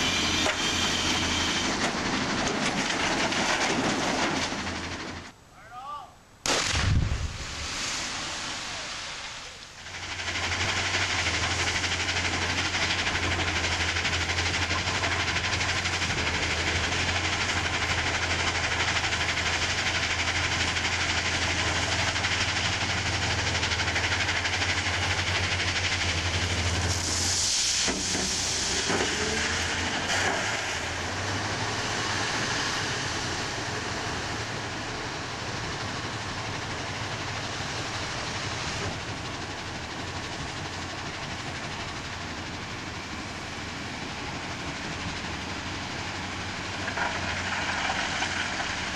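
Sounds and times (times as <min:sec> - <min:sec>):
diesel machinery engine drone: 0:00.0 - 0:05.4, 0:06.5 - 0:48.9
loud mechanical hiss: 0:24.1 - 0:33.9.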